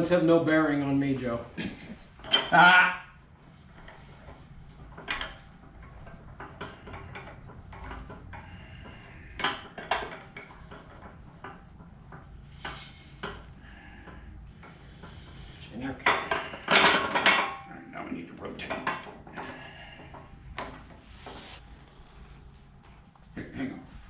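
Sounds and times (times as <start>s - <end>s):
metal parts and tools clinking: 2.2s - 2.6s.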